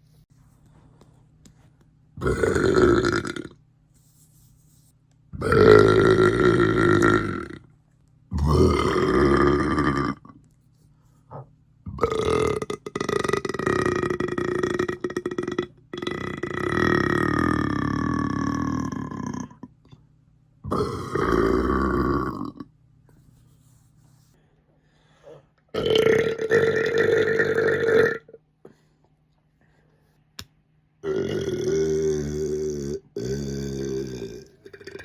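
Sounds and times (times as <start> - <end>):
person burping loudly: 2.2 - 3.6, 5.4 - 7.7, 8.3 - 10.4, 11.9 - 19.7, 20.6 - 22.7, 25.7 - 28.4, 31.0 - 35.0.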